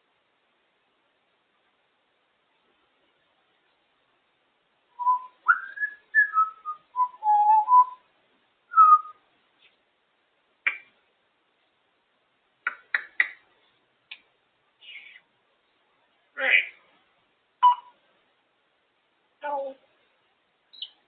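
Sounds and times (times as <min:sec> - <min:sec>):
parrot whistling: 0:05.0 - 0:08.0, 0:17.6 - 0:17.9.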